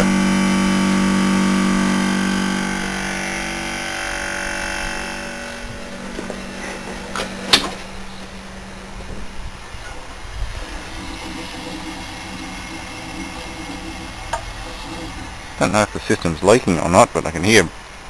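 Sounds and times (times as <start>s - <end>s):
air conditioner compressor hum: 0.0s - 18.0s
refrigerant hissing: 5.8s - 18.0s.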